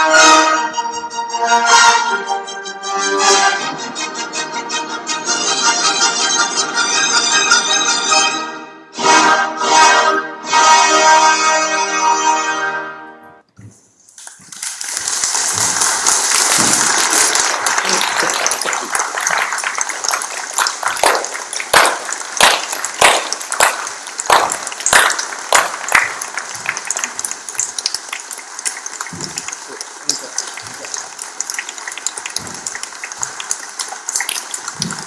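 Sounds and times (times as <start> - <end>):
audience clapping and cheering: 14.2 - 35.0.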